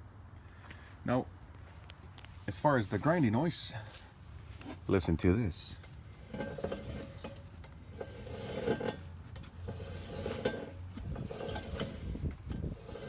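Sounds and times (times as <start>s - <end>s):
wheel bearing grinding: 5.7s - 13.0s.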